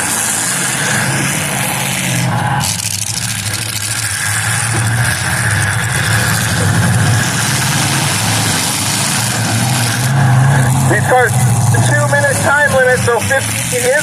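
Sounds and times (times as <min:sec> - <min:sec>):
car engines running: 0:00.0 - 0:14.0
noisy wash: 0:00.0 - 0:14.0.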